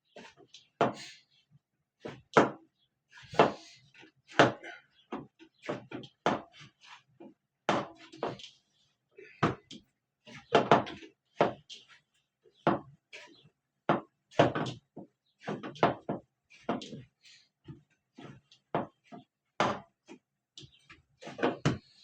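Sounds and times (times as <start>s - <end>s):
knocks and thuds on hard surface: 2.1s - 2.6s, 7.7s - 8.4s, 10.5s - 11.7s, 13.9s - 17.0s, 19.6s - 19.9s, 20.6s - 22.0s.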